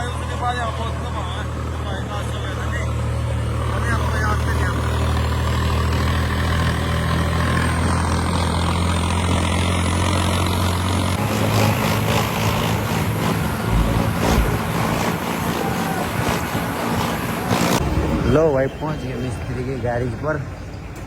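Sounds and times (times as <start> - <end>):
diesel tractor engine running: 0.0 - 21.0
low thumps: 13.5 - 15.1.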